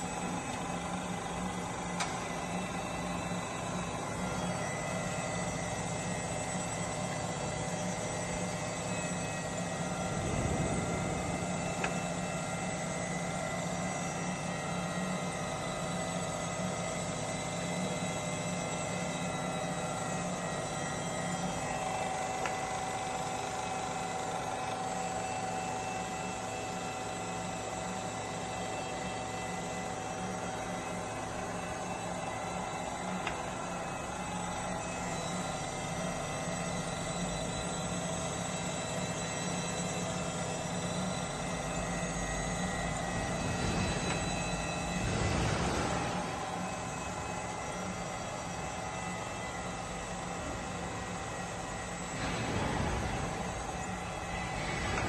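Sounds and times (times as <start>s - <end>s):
grinder motor hum: 0.0s - 18.2s, 29.3s - 55.0s.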